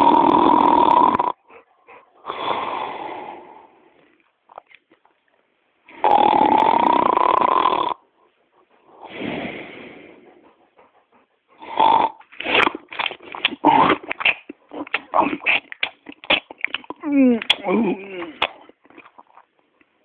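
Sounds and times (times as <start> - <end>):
soft breath: 1.4 - 4.2, 8.2 - 11.8.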